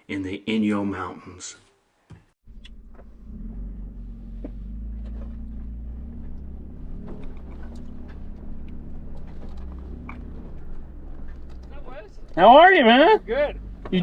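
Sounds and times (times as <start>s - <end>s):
truck engine rumbling: 2.4s - 14.0s
small clicks and rattles: 6.3s - 12.4s.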